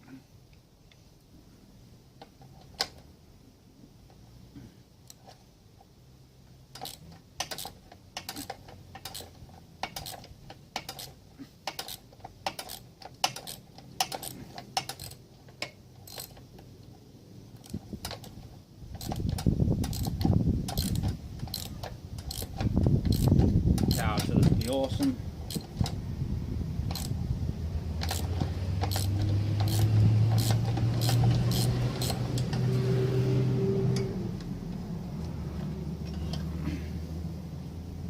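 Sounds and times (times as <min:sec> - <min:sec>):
metallic clicking of hand tools: 0:06.7 - 0:16.7, 0:19.0 - 0:24.9, 0:25.5 - 0:26.0, 0:26.9 - 0:27.2, 0:28.0 - 0:32.8
low handling rumble: 0:17.5 - 0:38.0.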